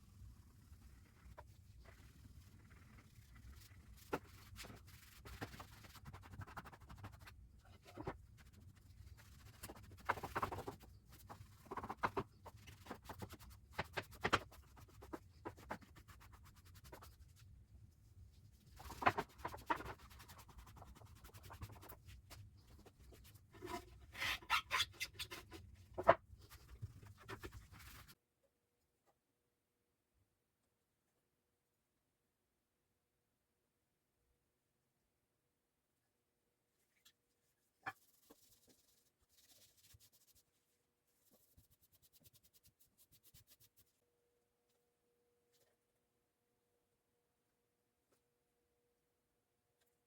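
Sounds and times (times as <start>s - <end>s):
scratching and rubbing on wood: 18.6s - 28.2s.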